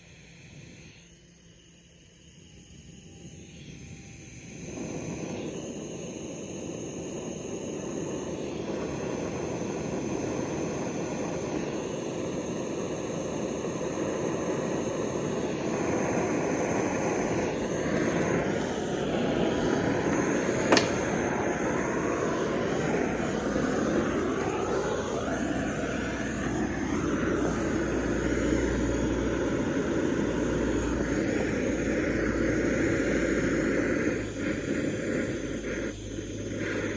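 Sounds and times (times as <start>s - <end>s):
cutting torch roaring: 3.2s - 36.9s
sharp click: 20.7s - 21.3s.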